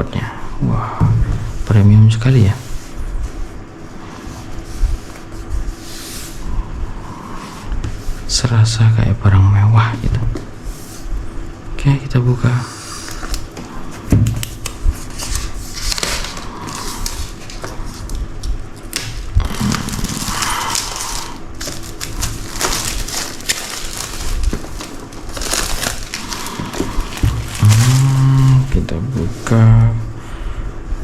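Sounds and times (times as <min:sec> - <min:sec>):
packaging rustling and scraping: 0:12.8 - 0:29.7.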